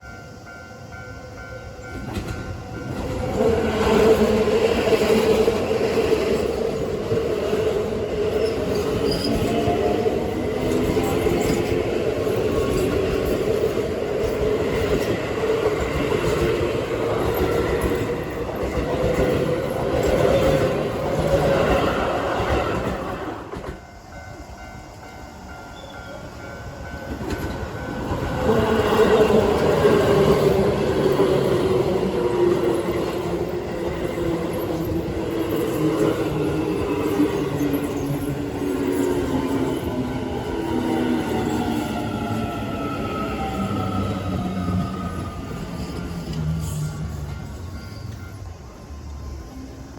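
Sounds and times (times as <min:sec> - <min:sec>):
train wheels clacking on rails: 0:01.8 - 0:24.0, 0:26.5 - 0:48.4.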